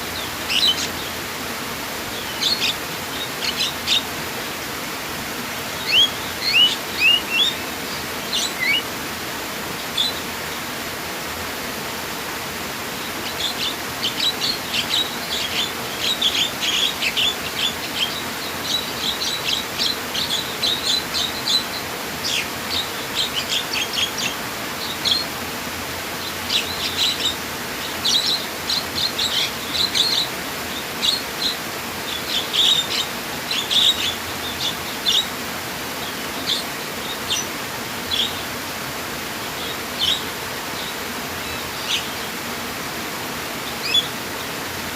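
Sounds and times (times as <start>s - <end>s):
small birds chirping: 0.0s - 9.2s, 9.8s - 10.7s, 12.8s - 25.4s, 26.0s - 42.5s, 43.3s - 44.9s
running water hiss: 0.0s - 44.9s.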